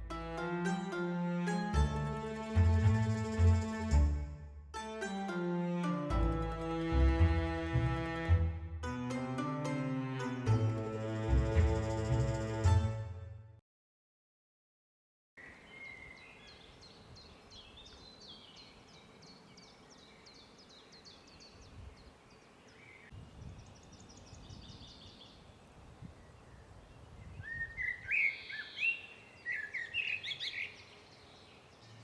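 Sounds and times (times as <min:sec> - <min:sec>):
outdoor background noise: 0:15.4 - 0:32.0
wild birds singing: 0:15.4 - 0:32.0.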